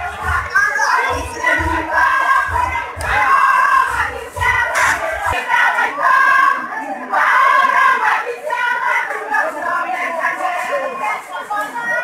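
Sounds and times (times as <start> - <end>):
low music with a beat: 0.0 - 5.4
crowd shouting and cheering: 0.0 - 12.0.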